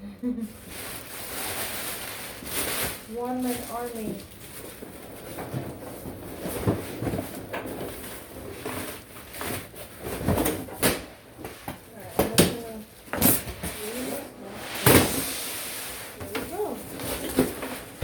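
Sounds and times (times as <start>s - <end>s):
packaging rustling: 0.5s - 14.3s.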